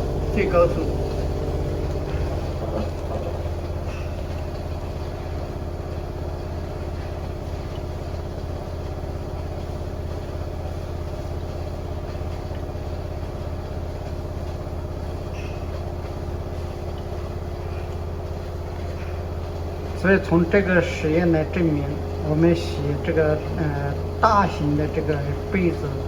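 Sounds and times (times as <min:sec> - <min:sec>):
washing machine drum spinning: 0:00.0 - 0:26.0.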